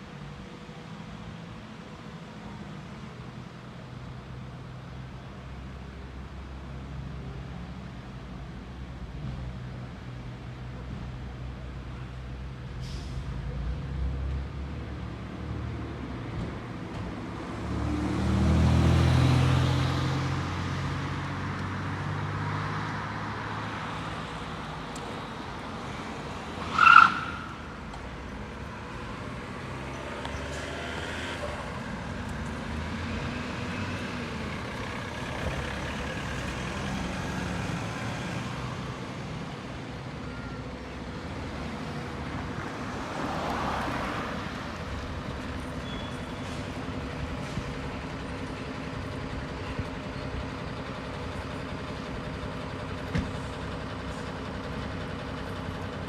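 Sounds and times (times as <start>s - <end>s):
fire engine running: 18.6s - 26.6s, 27.5s - 56.0s.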